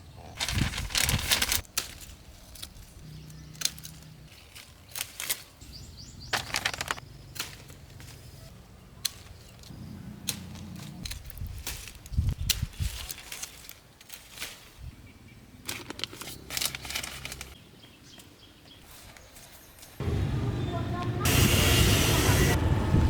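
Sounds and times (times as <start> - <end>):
vines and leaves rustling and snapping: 0.3 - 20.0.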